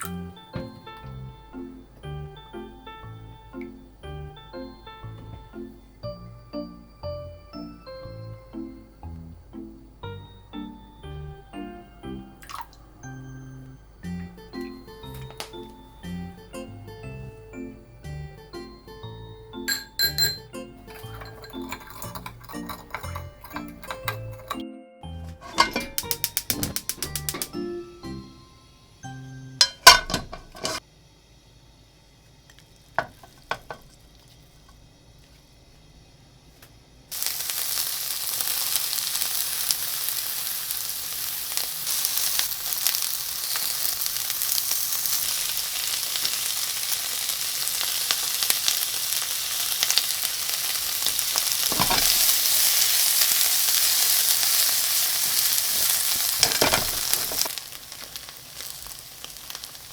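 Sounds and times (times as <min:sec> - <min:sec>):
utensil knocking in pan: 0:00.0 - 0:24.6, 0:25.4 - 0:27.7, 0:29.6 - 0:30.8, 0:33.0 - 0:33.9, 0:51.0 - 0:52.6, 0:55.2 - 0:57.5
tofu sizzling in hot oil: 0:00.1 - 0:19.9, 0:25.5 - 0:27.6, 0:37.1 - 0:59.9.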